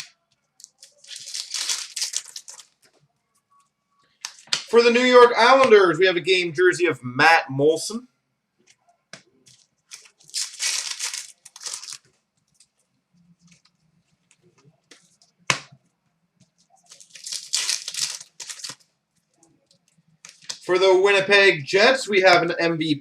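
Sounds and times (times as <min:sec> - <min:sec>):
wrappers ripping and rustling: 0:00.0 - 0:03.0, 0:09.5 - 0:12.8, 0:16.8 - 0:18.9, 0:20.2 - 0:20.7.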